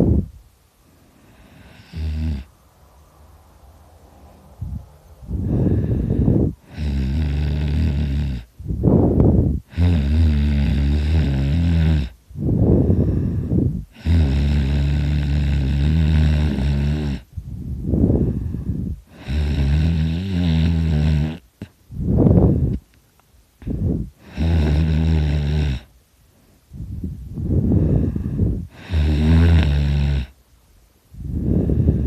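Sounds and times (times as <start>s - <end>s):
breathy rush of air: 0.0s - 6.8s, 12.2s - 14.0s, 17.2s - 19.2s, 21.9s - 22.9s, 23.6s - 24.4s, 26.2s - 28.9s, 31.0s - 32.0s
man snoring loudly: 1.2s - 2.5s, 5.4s - 8.5s, 9.7s - 12.2s, 13.9s - 17.3s, 19.1s - 21.4s, 24.2s - 25.9s, 28.7s - 30.4s.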